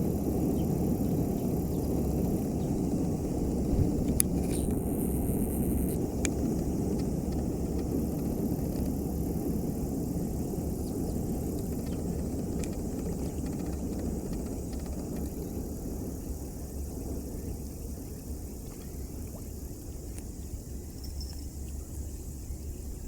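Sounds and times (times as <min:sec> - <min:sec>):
low outdoor rumble: 0:00.0 - 0:23.0
faint clicks: 0:11.5 - 0:15.4.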